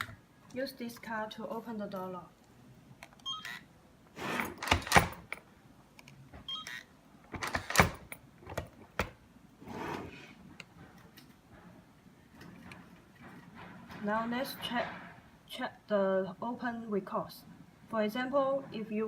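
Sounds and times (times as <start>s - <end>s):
door lock clicks and clacks: 4.4s - 5.4s, 7.3s - 9.2s.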